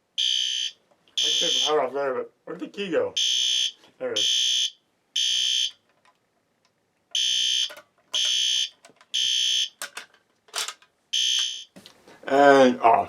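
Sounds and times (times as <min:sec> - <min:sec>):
alarm horn blasts: 0:01.2 - 0:01.7.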